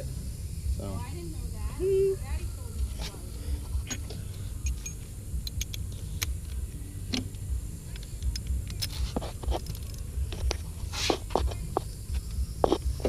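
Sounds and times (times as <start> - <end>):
steady low rumble: 0.0 - 13.0
metallic clinks of hand tools: 3.9 - 5.8.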